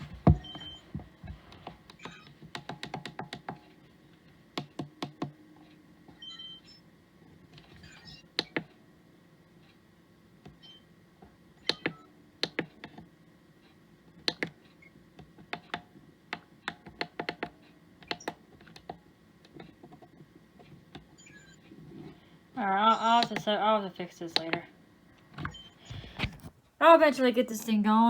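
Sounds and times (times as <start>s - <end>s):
plastic buttons clicking: 23.2s - 23.5s, 24.3s - 24.6s.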